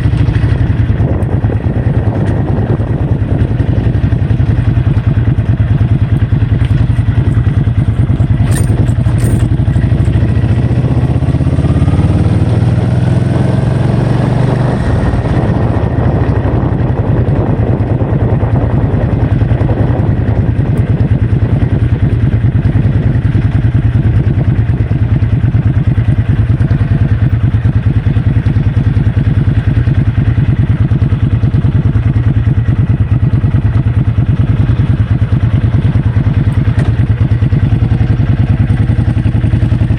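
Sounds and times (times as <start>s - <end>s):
vehicle engine running: 0.0s - 39.9s
wind buffeting on microphone: 0.0s - 39.9s.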